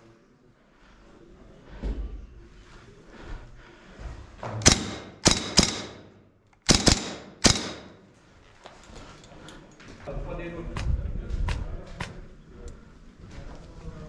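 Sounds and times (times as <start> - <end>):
airsoft gun shots: 4.6 - 8.0.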